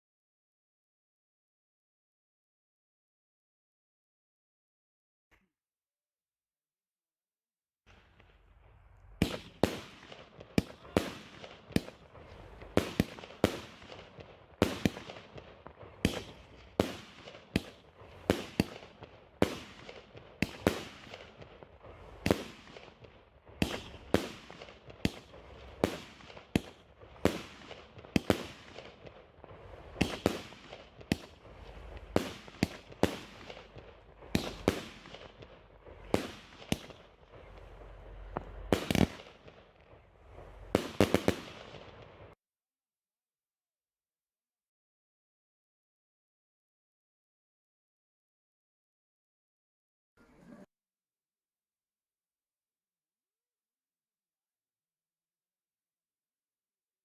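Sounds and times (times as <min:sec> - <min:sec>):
fireworks firing sharp reports: 0:07.9 - 0:42.4.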